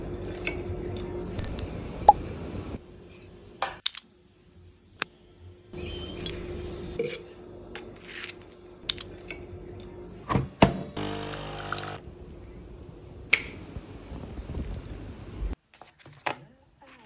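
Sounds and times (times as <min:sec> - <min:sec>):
kitchen clicks and knocks: 0:10.3 - 0:11.0
brief buzzing hum: 0:10.8 - 0:12.0.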